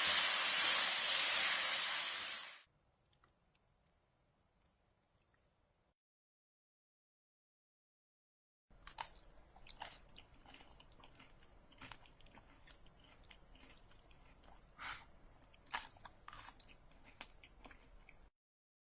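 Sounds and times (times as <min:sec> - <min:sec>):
crunchy chewing: 0:08.8 - 0:18.3.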